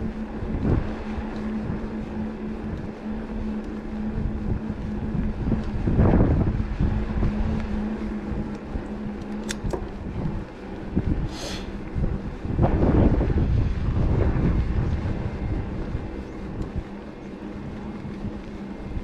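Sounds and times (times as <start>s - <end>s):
electric motor whine: 0.0s - 19.0s
wind buffeting microphone: 0.0s - 19.0s
sharp ticks: 16.5s - 16.9s.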